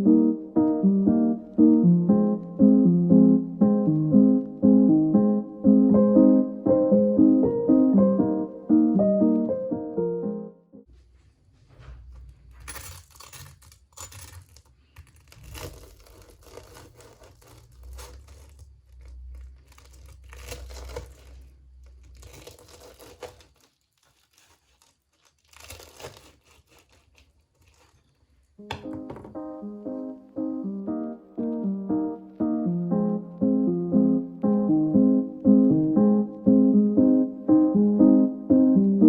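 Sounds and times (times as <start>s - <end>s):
crinkling and tearing: 12.4s - 28.6s.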